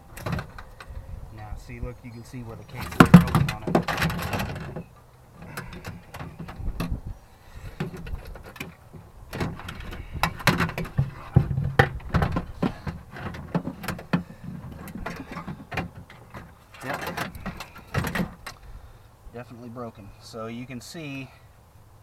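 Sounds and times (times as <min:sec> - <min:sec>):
metal and plastic parts knocking: 0:02.8 - 0:07.0, 0:07.8 - 0:18.6.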